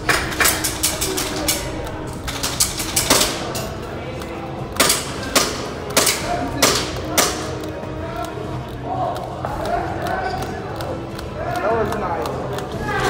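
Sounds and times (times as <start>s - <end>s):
faint voices: 0.0s - 13.0s
sharp cracks and clicks: 0.0s - 13.0s.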